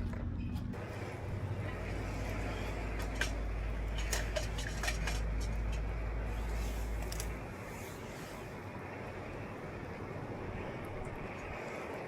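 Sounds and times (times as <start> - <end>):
wind buffeting microphone: 0.8 - 12.0.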